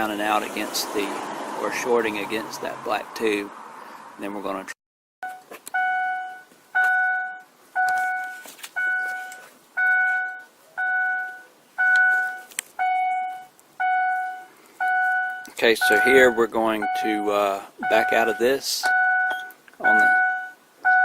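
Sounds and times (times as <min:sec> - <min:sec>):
vehicle warning chime dinging: 0:05.2 - 0:21.0.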